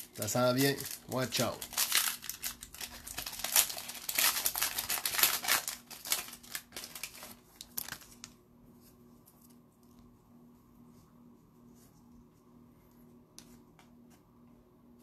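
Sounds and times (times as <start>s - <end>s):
plastic wrapper crinkling and tearing: 0.0s - 8.4s.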